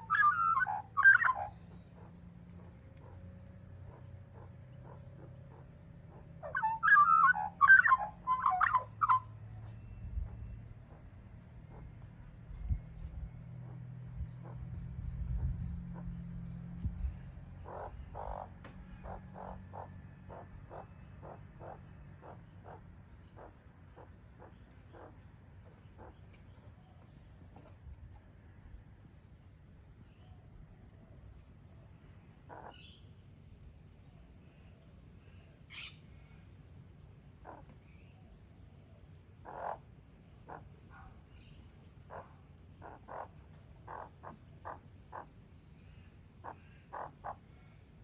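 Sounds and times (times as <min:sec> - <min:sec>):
magpie harsh calls: 0:00.0 - 0:03.2, 0:03.8 - 0:09.3, 0:17.6 - 0:26.3, 0:37.4 - 0:37.6, 0:39.4 - 0:41.1, 0:42.0 - 0:45.4, 0:46.4 - 0:47.5
faint low rumble: 0:00.0 - 0:48.0.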